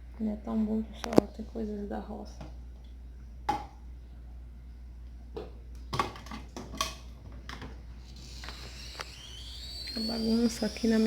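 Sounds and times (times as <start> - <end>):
steady low hum: 7.1 - 11.0.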